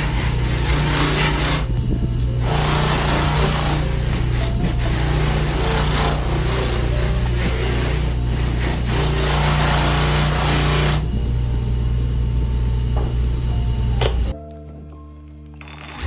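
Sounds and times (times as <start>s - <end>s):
rasping on wood: 0.0s - 11.1s
power tool motor hum: 0.0s - 14.4s, 15.6s - 16.0s.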